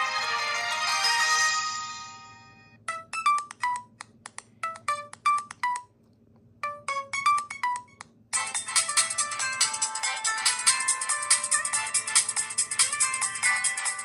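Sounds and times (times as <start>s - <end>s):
bright phone ringtone melody: 0.0s - 3.9s, 4.6s - 5.9s, 6.6s - 14.0s
fuller phone ringtone: 6.6s - 14.0s.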